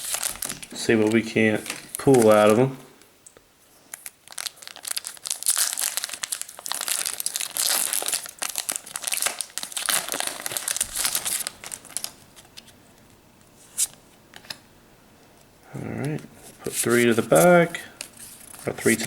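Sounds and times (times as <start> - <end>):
foil wrapper crinkling: 0.0 - 2.7, 3.8 - 12.7.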